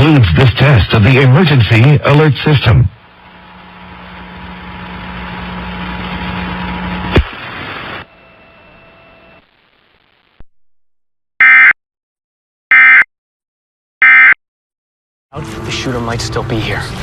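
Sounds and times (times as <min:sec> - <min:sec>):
broadcast static hiss: 0:00.0 - 0:10.4
low hum: 0:00.0 - 0:10.4.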